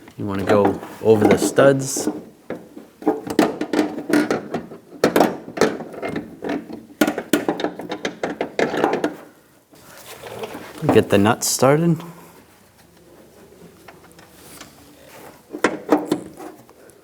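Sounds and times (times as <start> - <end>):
metal door hinge clicks and clunks: 0.4 - 9.3, 15.5 - 16.5.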